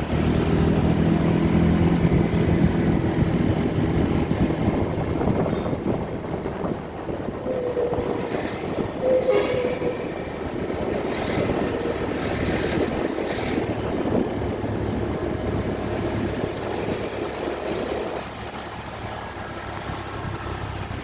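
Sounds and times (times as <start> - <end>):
held tone: 7.3 - 10.5.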